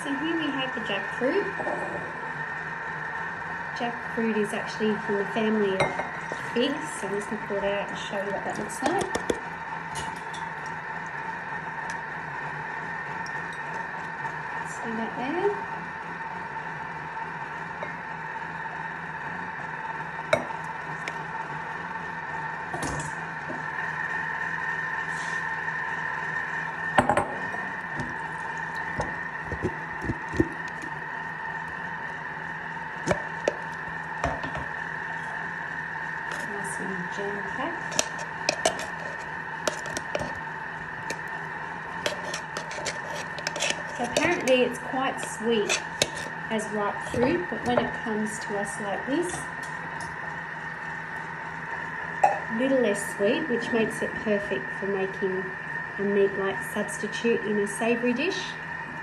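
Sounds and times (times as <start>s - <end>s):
kitchen machine humming: 0.0s - 59.0s
kitchen items clattering: 37.8s - 40.4s, 42.0s - 46.3s.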